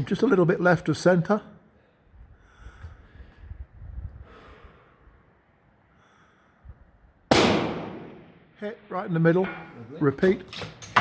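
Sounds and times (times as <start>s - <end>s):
faint breathing: 1.6s - 7.0s
rifle shot with echo: 7.3s - 8.6s.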